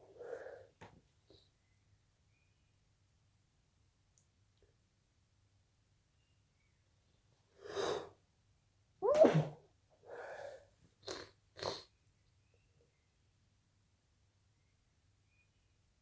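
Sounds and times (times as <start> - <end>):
person sneezing: 9.0 - 9.6.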